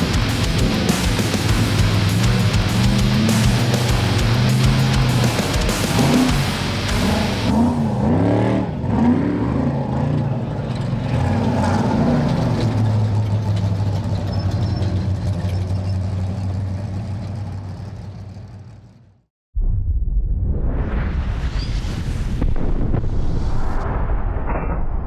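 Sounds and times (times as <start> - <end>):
truck engine revving: 0.0 - 17.0.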